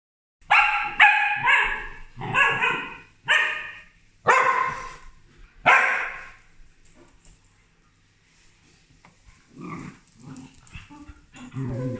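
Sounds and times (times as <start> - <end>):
dogs barking sharply: 0.4 - 6.5.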